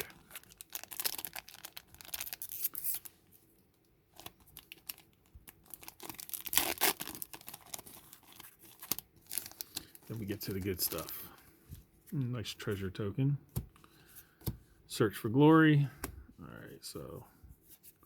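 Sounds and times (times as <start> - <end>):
foil wrapper tearing: 0.0 - 3.1, 4.2 - 11.2.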